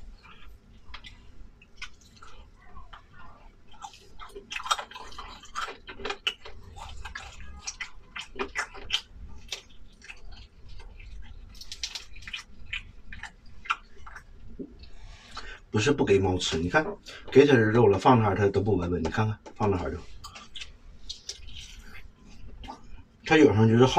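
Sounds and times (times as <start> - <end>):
person chewing food: 0.0 - 15.7, 19.4 - 23.2
wet mouth clicks and smacks: 8.2 - 15.0.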